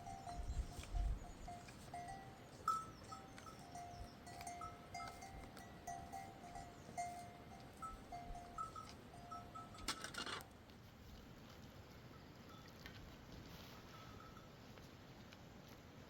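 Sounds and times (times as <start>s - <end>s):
sheep bells clinking: 0.0s - 10.5s, 12.1s - 12.9s, 13.6s - 14.8s.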